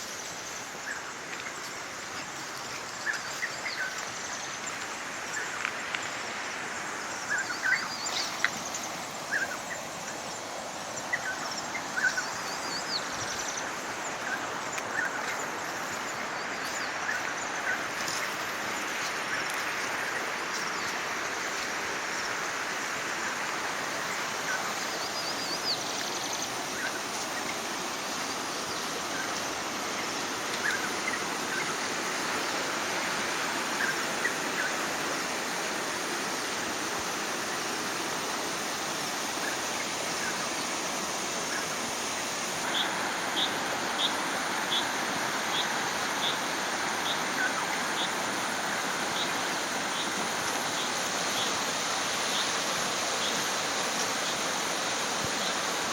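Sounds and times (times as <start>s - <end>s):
rushing stream: 0.0s - 55.9s
small birds chirping: 0.1s - 21.4s.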